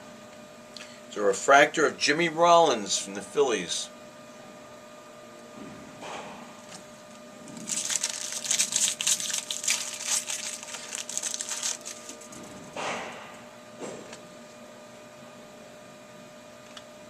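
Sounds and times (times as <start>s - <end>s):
foil wrapper tearing and crinkling: 7.5s - 12.5s.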